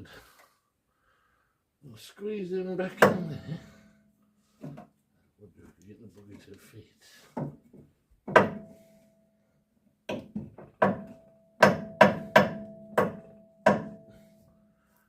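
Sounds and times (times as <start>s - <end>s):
sharp ringing metal knocks: 3.0s - 4.8s, 8.3s - 8.9s, 10.1s - 14.3s.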